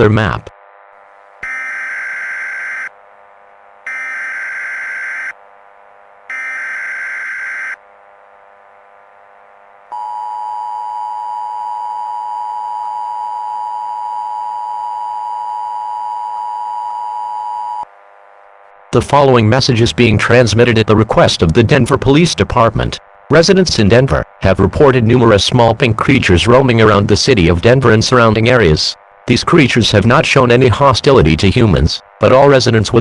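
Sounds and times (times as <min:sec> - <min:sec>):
data burst tones: 0:01.4 - 0:02.9, 0:03.9 - 0:05.4, 0:06.3 - 0:07.8
steady warning alarm tone: 0:01.4 - 0:03.0, 0:03.8 - 0:05.4, 0:06.3 - 0:07.8, 0:09.9 - 0:17.9.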